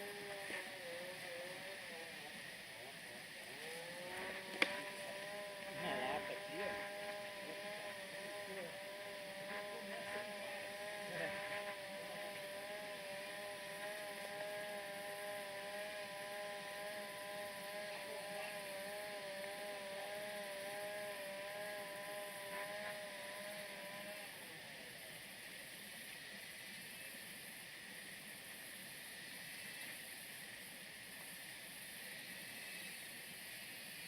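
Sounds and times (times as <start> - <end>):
small engine running: 0.0 - 34.0.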